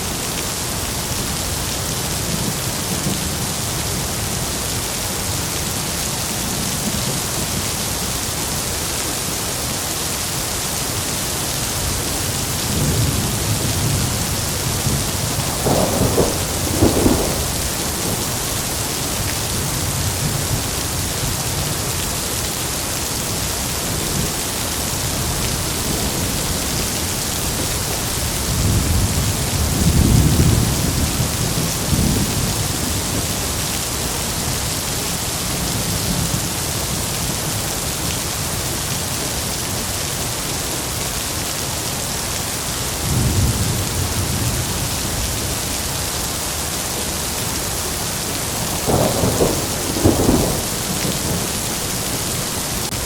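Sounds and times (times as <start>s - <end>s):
heavy rain hissing: 0.0s - 53.0s
rolling thunder: 12.6s - 20.6s, 25.1s - 33.4s, 48.5s - 53.0s
sharp crack of thunder: 12.7s - 19.6s, 48.6s - 52.8s.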